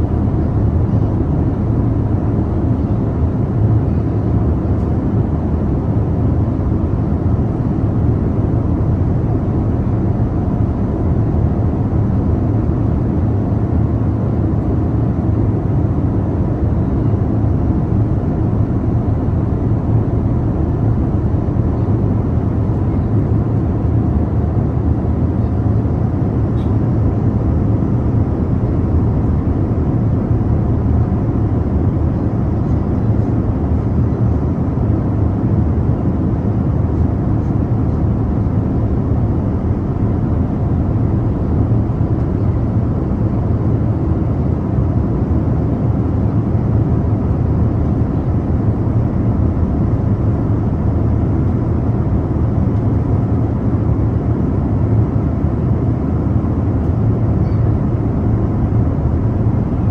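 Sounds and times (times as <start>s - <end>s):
airliner cabin rumble: 0.0s - 59.9s
faint steady hum: 0.0s - 59.9s.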